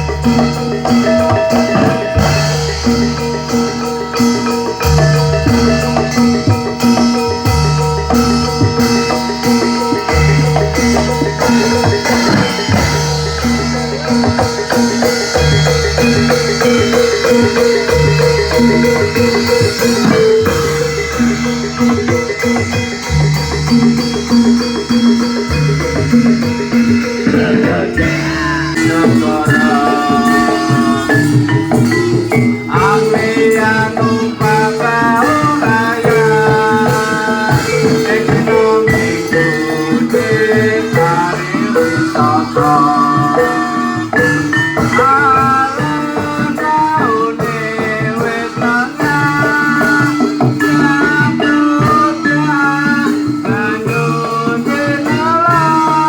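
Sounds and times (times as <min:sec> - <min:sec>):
ensemble of tuned percussion: 0:00.0 - 0:56.0
gamelan drums and gongs: 0:00.0 - 0:56.0.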